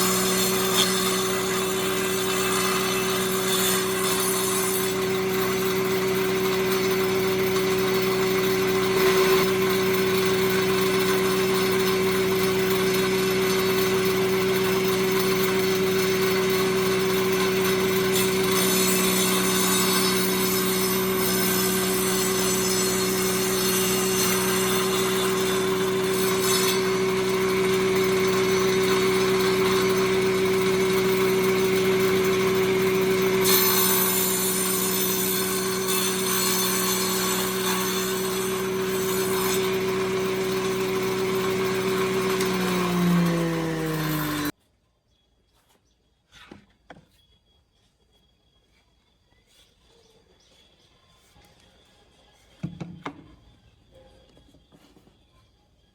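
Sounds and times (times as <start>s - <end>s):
saw motor humming: 0.0s - 44.6s.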